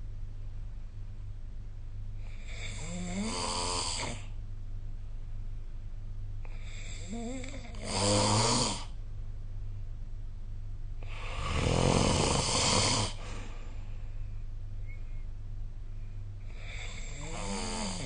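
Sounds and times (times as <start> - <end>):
person snoring: 2.4 - 4.3, 6.6 - 9.0, 11.0 - 13.5, 16.5 - 18.0.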